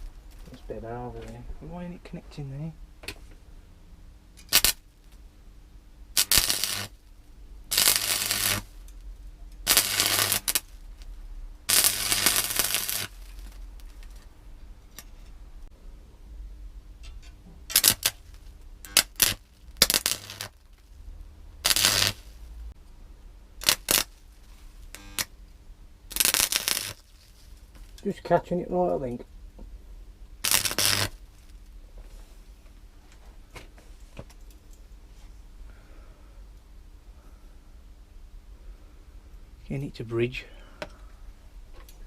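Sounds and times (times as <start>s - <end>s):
welding arc crackling and sizzling: 4.4s - 5.2s, 6.1s - 14.3s, 17.6s - 21.0s, 21.6s - 22.6s, 23.6s - 25.4s, 26.1s - 29.2s, 30.4s - 31.8s.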